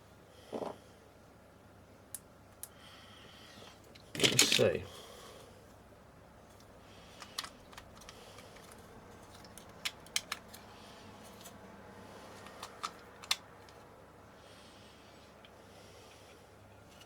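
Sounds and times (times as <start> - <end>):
small hard parts clicking: 3.9 - 4.8, 6.6 - 11.6, 12.3 - 13.9.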